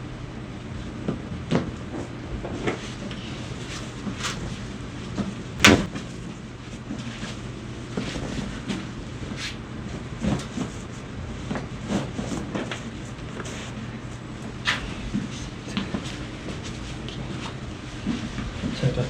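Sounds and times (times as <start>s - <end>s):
sharp spine crack: 5.6s - 5.9s.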